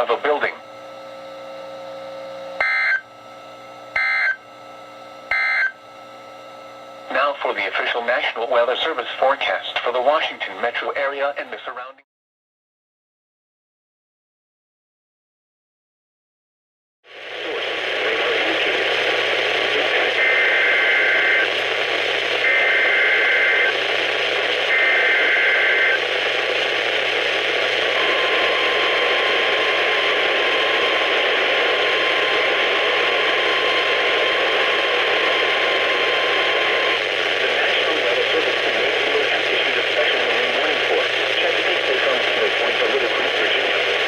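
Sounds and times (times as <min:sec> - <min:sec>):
radio static: 0:00.0 - 0:00.7, 0:07.1 - 0:12.0, 0:17.1 - 0:44.0
steady alarm tone: 0:02.6 - 0:03.1, 0:03.9 - 0:04.4, 0:05.3 - 0:05.8, 0:27.9 - 0:36.9.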